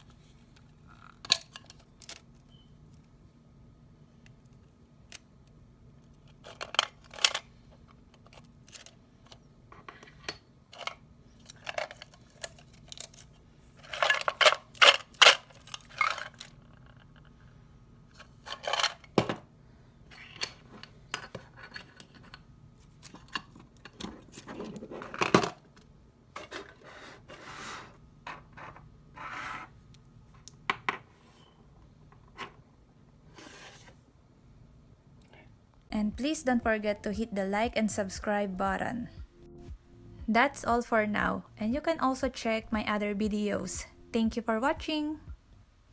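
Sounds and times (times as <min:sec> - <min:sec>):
hands handling metal tin: 0:10.2 - 0:16.5
candies rattling in tin: 0:10.8 - 0:16.5.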